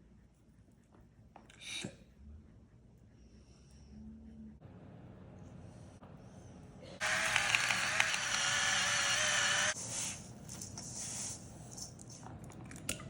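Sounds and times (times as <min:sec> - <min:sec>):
kitchen appliance motor running: 0:07.0 - 0:09.8.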